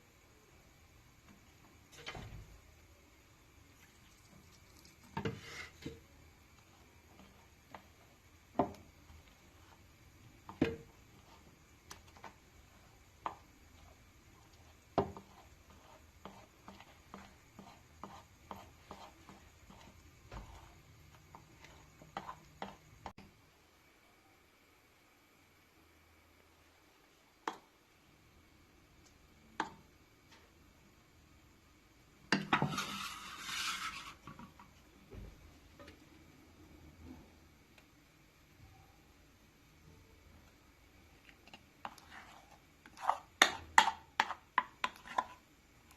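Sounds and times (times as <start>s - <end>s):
utensils scraping dishes: 32.4s - 34.4s.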